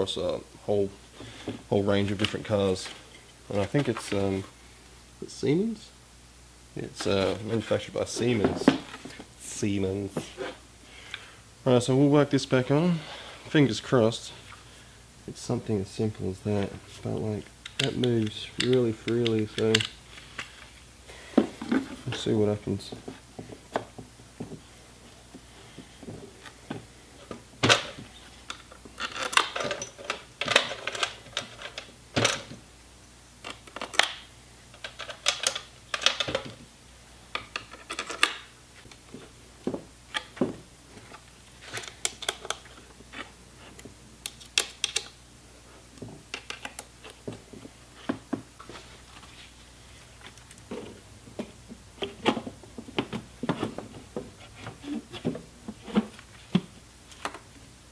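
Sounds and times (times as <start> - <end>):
hand tools clicking and tapping: 17.6 - 20.0, 44.2 - 45.2.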